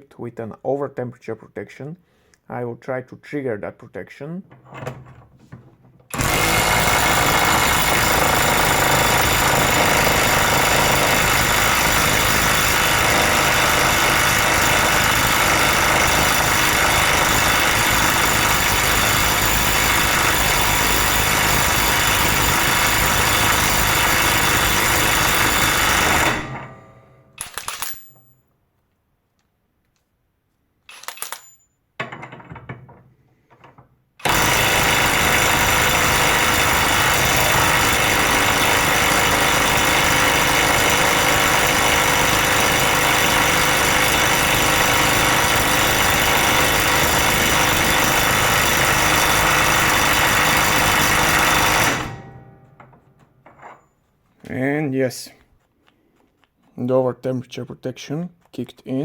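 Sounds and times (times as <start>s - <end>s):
impact wrench hammering: 6.1s - 28.3s, 33.6s - 53.8s.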